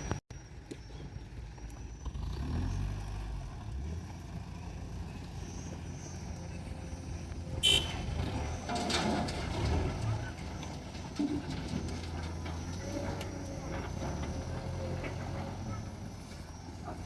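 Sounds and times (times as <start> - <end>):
heavy diesel machinery rumbling: 0.0 - 17.0
sharp high-pitched squeal: 5.4 - 10.4.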